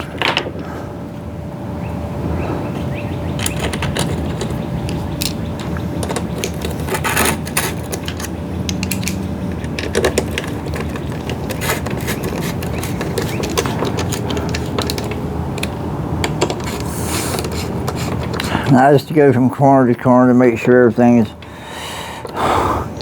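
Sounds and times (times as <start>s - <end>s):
steady low hum: 0.0s - 23.0s
clicking and rattling of tools: 3.4s - 18.7s, 22.2s - 23.0s.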